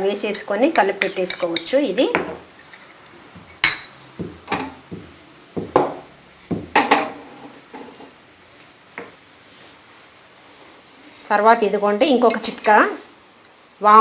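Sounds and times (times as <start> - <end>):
spoon knocking kitchen bowls: 3.4 - 7.2.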